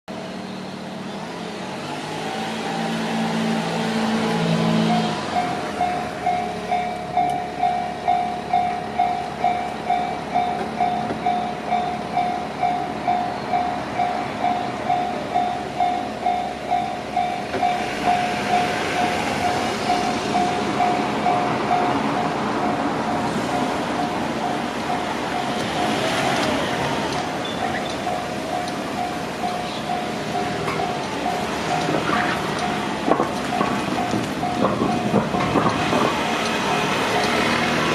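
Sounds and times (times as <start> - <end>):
passing train: 0.1 - 37.9
level-crossing bell ringing: 27.2 - 35.2.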